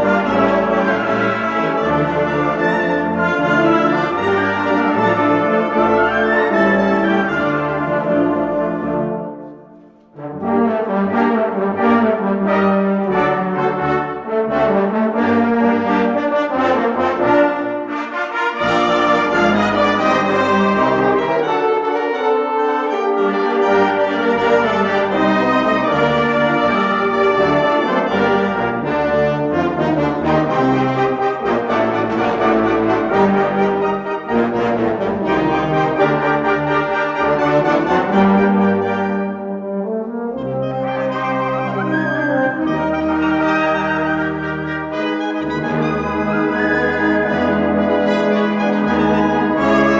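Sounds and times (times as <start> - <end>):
brass ensemble playing slow chords: 0.0 - 49.9.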